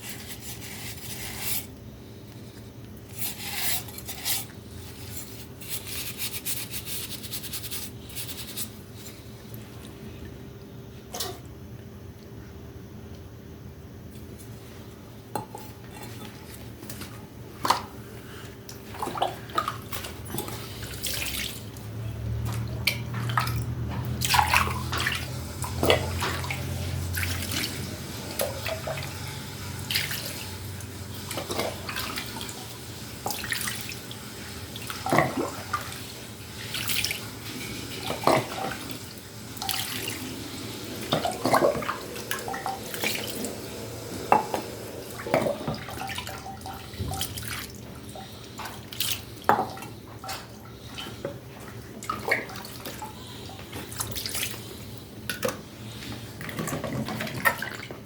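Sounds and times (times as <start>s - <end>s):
water splashing and dripping: 18.7s - 54.7s.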